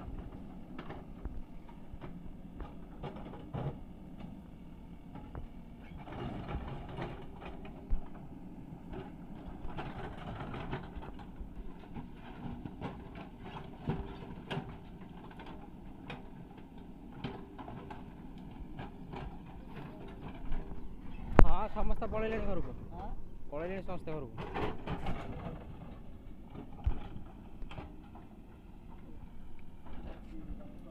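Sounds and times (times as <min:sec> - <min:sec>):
knocks and clatter: 0:24.4 - 0:28.2.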